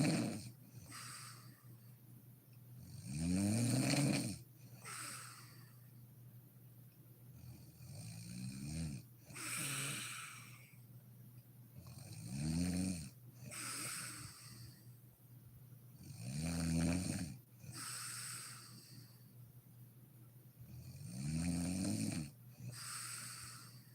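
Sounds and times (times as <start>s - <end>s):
woman snoring: 0.0s - 1.6s, 2.8s - 5.7s, 7.6s - 10.7s, 11.8s - 14.8s, 16.0s - 19.1s, 20.8s - 23.9s.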